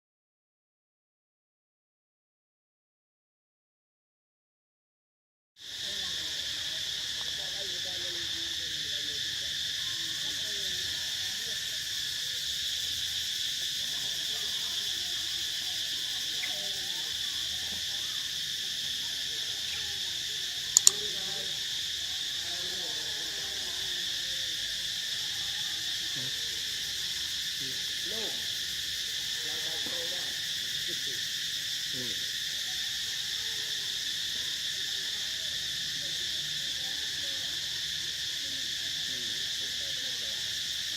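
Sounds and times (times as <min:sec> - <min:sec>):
shrill insect chorus: 0:05.6 - 0:40.9
sharp click: 0:20.8 - 0:21.0.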